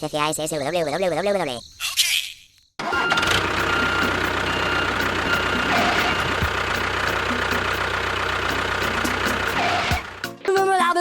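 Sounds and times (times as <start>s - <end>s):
engine idling: 2.8s - 10.4s.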